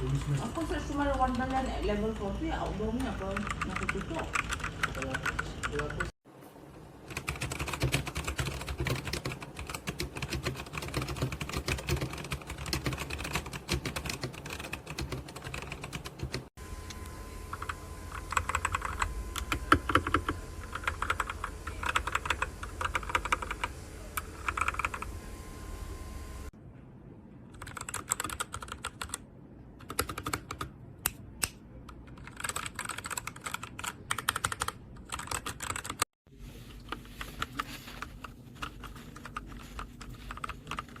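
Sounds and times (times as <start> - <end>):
mechanical keyboard typing: 0.0 - 1.7, 2.6 - 6.1, 7.1 - 16.5, 17.6 - 25.1, 27.5 - 29.2, 29.8 - 30.7, 31.9 - 36.1, 37.4 - 41.0
faint steady hum: 0.0 - 28.0.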